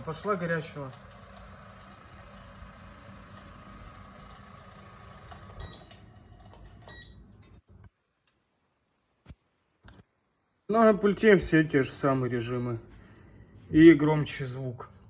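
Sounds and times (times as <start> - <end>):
fan heater whirring: 0.0 - 7.5.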